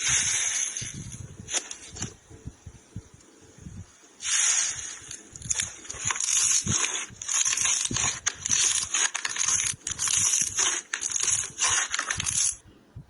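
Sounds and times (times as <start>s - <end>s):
loud crunching and crackling: 4.2s - 12.6s.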